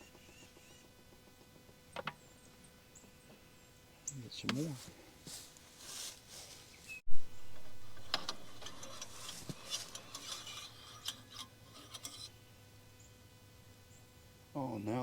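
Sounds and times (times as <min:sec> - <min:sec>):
small metallic clicks and knocks: 0:07.6 - 0:12.3
rubbing and scraping on metal: 0:07.6 - 0:12.4.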